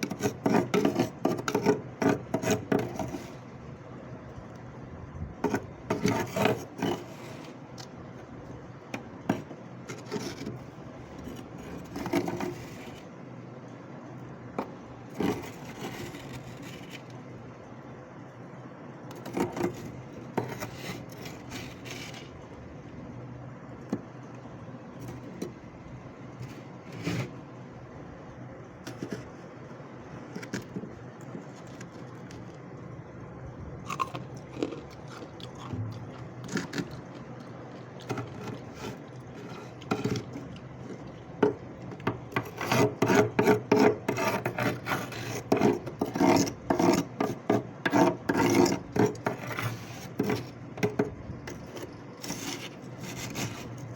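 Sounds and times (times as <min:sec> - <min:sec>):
freezer frost being scraped: 0:00.0 - 0:03.6, 0:05.4 - 0:07.9, 0:09.2 - 0:13.1, 0:14.6 - 0:17.2, 0:19.1 - 0:22.5, 0:26.3 - 0:27.5, 0:28.8 - 0:32.6, 0:34.4 - 0:53.9.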